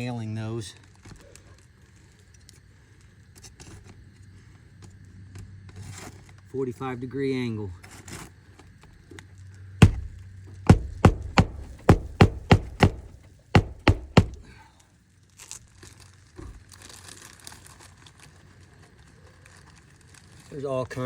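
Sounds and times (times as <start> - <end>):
hammer striking roofing nails: 9.8 - 14.5
shingles rustling: 9.8 - 14.5.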